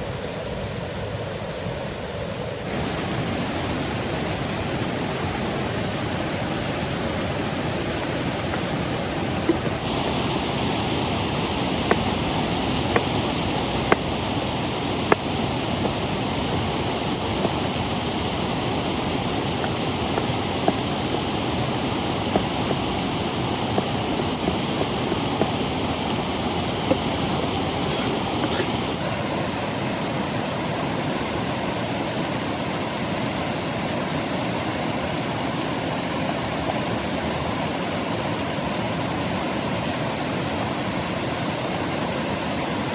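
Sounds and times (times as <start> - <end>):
rain hissing: 2.6 - 42.8
river water rushing: 2.6 - 42.9
sharp pops: 9.5 - 29.0.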